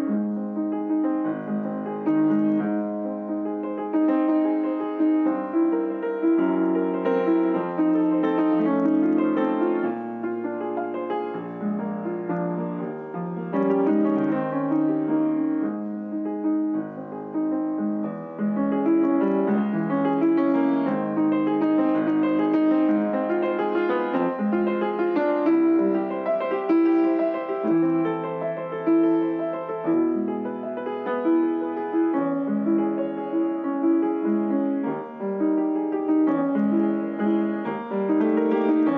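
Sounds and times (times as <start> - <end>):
solo piano music: 0.0 - 38.9.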